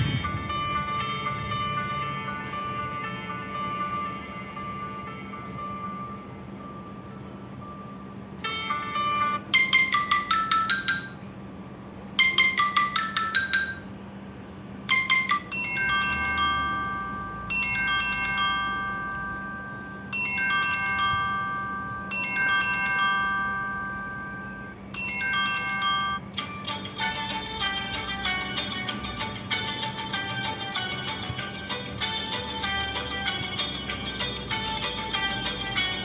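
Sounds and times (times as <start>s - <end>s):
ringtone chime melody: 0.0s - 11.2s, 12.2s - 14.0s, 14.9s - 36.0s.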